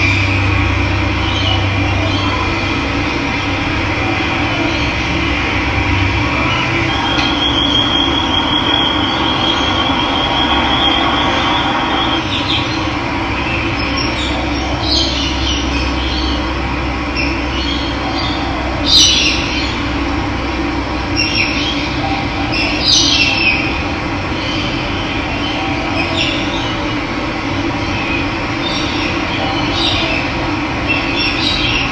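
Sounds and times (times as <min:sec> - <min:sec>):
thin high steady tone: 0:00.0 - 0:12.6
birds calling: 0:00.0 - 0:31.9
water rushing: 0:02.5 - 0:13.0.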